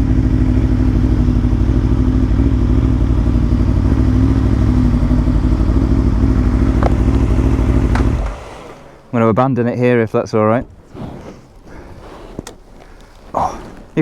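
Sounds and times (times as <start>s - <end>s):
motorcycle engine idling: 0.0s - 9.2s.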